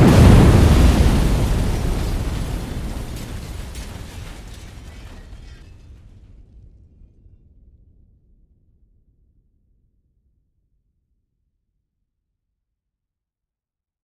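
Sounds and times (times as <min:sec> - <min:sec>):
explosion blast rumble: 0:00.0 - 0:05.4
debris crackles: 0:00.0 - 0:06.1.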